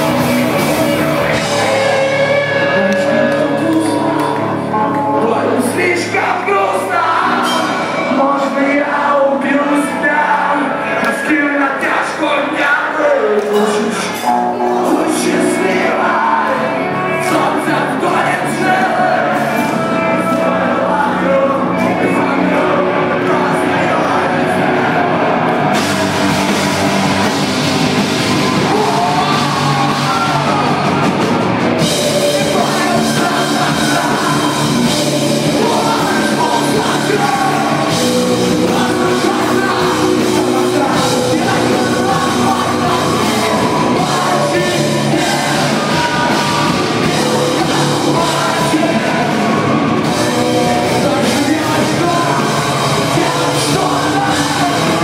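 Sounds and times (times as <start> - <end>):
live heavy rock band: 0.0 - 55.0.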